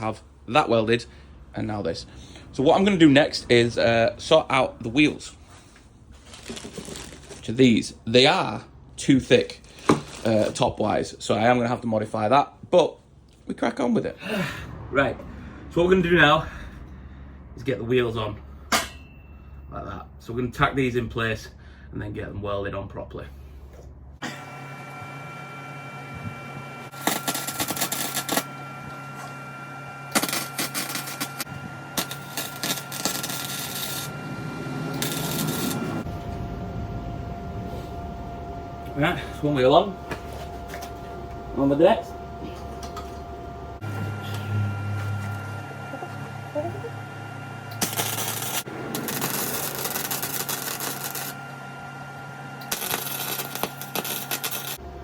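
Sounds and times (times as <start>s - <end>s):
steady hum: 23.1s - 55.0s
welding arc crackling: 26.9s - 28.5s, 30.1s - 34.2s, 34.8s - 36.1s, 47.7s - 51.4s, 52.6s - 54.8s.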